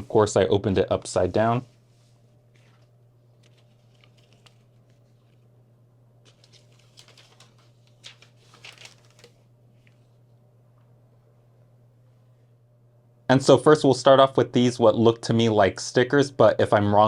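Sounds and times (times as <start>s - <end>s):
low steady hum: 0.0s - 17.0s
paper and plastic rustling: 2.5s - 5.5s, 6.2s - 10.1s.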